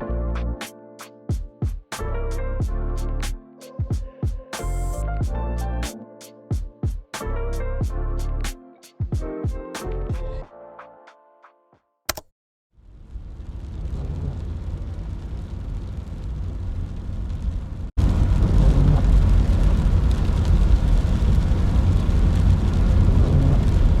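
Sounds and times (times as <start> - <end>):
deep noisy rumble: 12.8 - 24.0.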